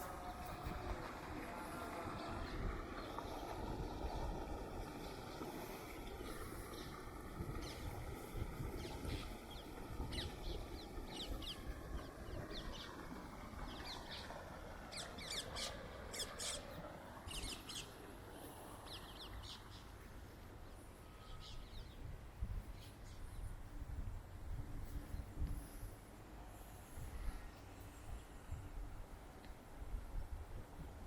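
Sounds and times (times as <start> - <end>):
steady low rumble: 0.0 - 20.8
small birds chirping: 8.8 - 11.7.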